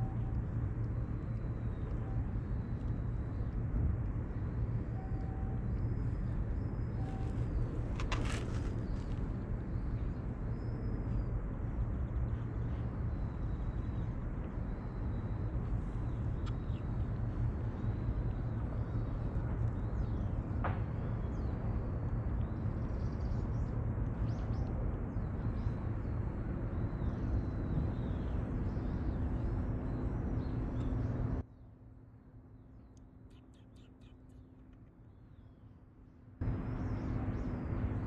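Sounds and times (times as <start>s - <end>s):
faint hum: 0.0s - 38.0s
low rumble of wind or traffic: 0.0s - 38.0s
small birds chirping: 5.2s - 20.4s, 32.8s - 35.7s.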